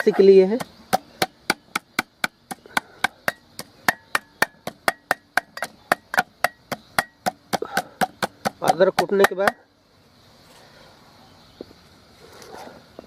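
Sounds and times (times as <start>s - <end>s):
ginger root being pounded: 0.0s - 9.7s.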